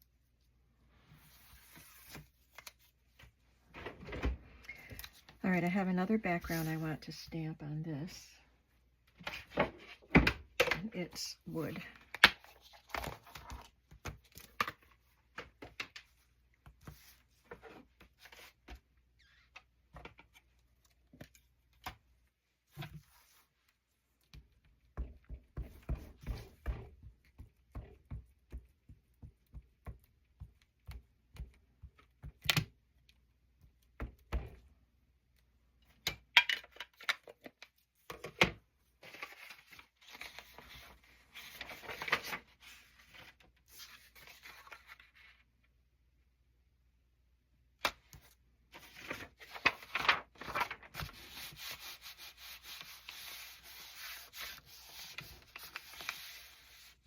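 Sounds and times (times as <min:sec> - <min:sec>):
rubbing and scraping on paper: 0:01.1 - 0:02.3, 0:06.4 - 0:06.9, 0:48.7 - 0:57.0.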